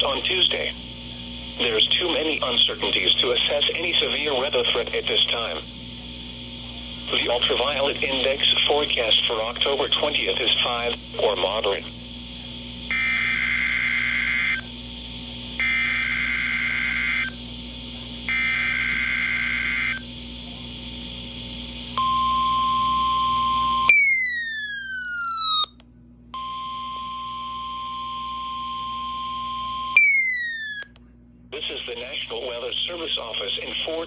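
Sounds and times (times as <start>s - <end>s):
steady single-pitch tone: 22.0s - 25.7s, 26.4s - 30.9s
raspy warbling data bursts: 30.0s - 30.9s.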